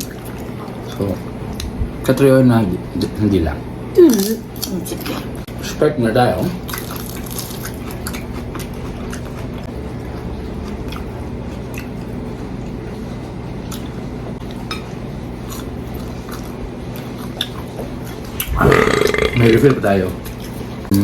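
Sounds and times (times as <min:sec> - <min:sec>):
people chewing and eating: 0:00.0 - 0:03.2, 0:04.0 - 0:21.0
steady low hum: 0:18.0 - 0:21.0.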